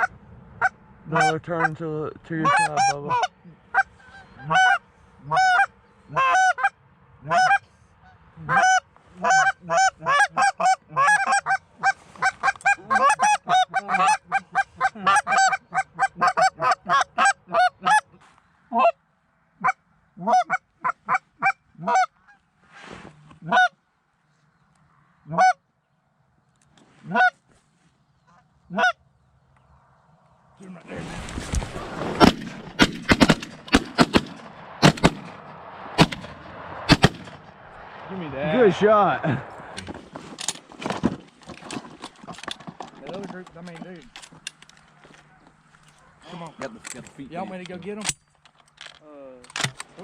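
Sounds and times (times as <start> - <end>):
geese honking: 0.0 - 19.0, 19.6 - 22.5, 23.4 - 23.8, 25.2 - 25.6, 27.0 - 27.4, 28.3 - 29.0.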